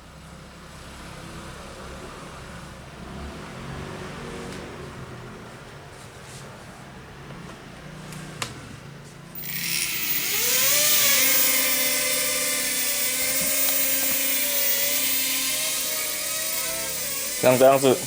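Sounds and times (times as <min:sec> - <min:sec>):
toy helicopter motor whine: 0:09.4 - 0:18.0.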